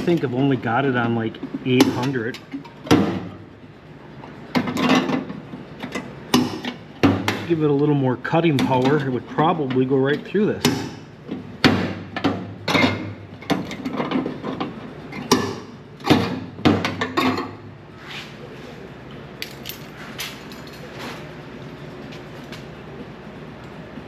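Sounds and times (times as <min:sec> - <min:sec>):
tools and sheet metal clanking: 0:12.2 - 0:17.6.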